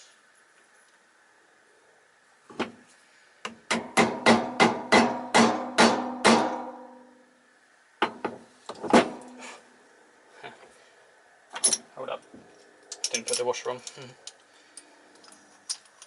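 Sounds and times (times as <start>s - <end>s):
hammer striking metal: 3.7s - 7.0s.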